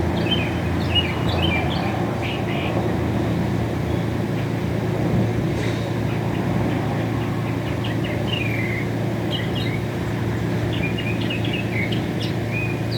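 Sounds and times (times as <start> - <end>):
low hum of traffic: 0.0 - 12.9.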